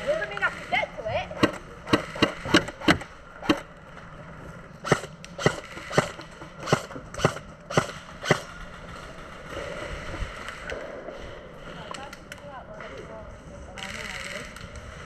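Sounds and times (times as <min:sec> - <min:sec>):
airsoft rifle shots: 0:00.5 - 0:03.7, 0:04.8 - 0:09.8.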